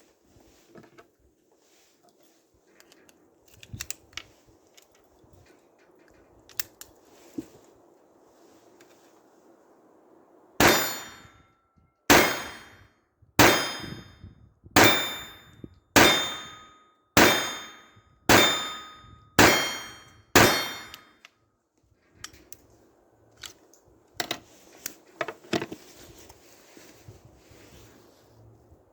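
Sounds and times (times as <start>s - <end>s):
pistol shots: 10.6s - 11.2s, 12.1s - 12.7s, 13.4s - 14.0s, 17.2s - 18.8s, 19.4s - 21.0s.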